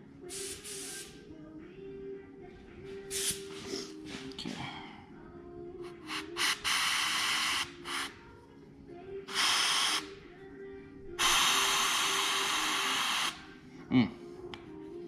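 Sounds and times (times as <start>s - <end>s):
compressed air hissing from nozzle: 0.3s - 1.2s, 3.1s - 4.1s, 5.8s - 8.3s, 9.3s - 10.2s, 11.2s - 13.6s.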